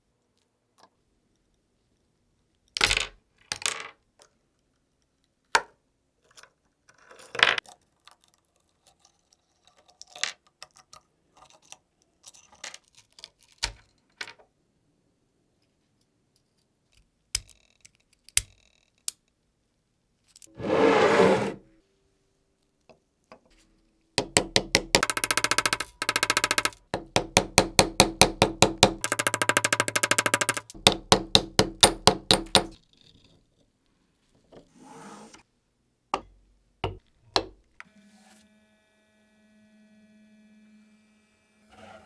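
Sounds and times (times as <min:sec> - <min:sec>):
metal objects scraping: 0:20.5 - 0:21.7
metallic clinks and taps: 0:24.2 - 0:27.1, 0:28.2 - 0:32.8.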